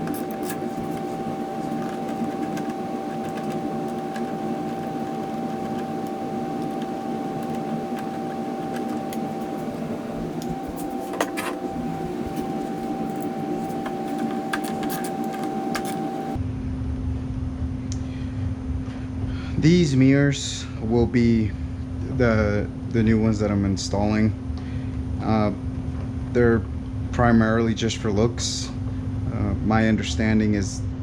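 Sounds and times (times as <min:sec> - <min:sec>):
hand tools clicking and tapping: 0:00.0 - 0:16.4
steady mechanical hum: 0:00.0 - 0:31.0.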